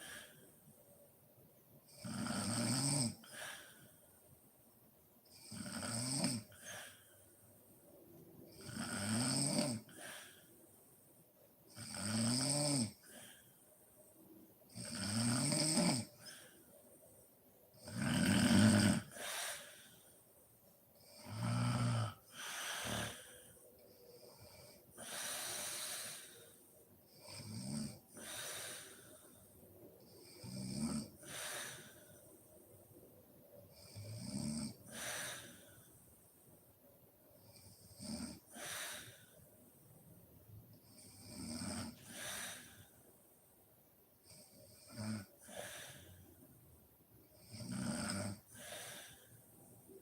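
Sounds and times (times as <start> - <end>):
woman snoring: 1.9 - 3.8, 5.3 - 7.0, 8.5 - 10.4, 11.7 - 13.4, 14.7 - 16.4, 17.8 - 20.0, 21.0 - 23.5, 27.1 - 29.1, 30.2 - 32.0, 33.7 - 35.7, 40.9 - 42.9, 47.4 - 49.3.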